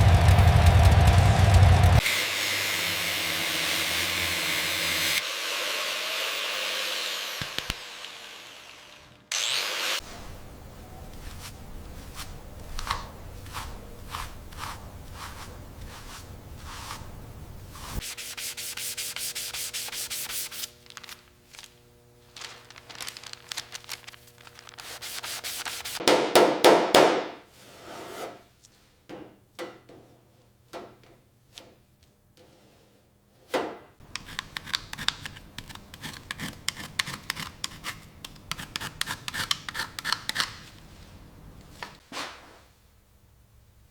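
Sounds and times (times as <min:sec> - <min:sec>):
low rumble: 0:00.0 - 0:02.0
hand rubbing strokes: 0:10.1 - 0:21.7, 0:22.3 - 0:26.0.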